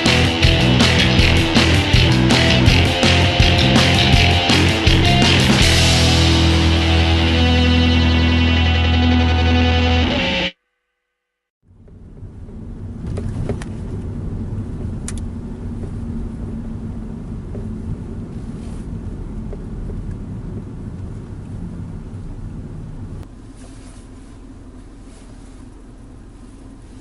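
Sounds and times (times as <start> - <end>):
car cabin rumble: 0.0 - 6.2, 11.7 - 27.0.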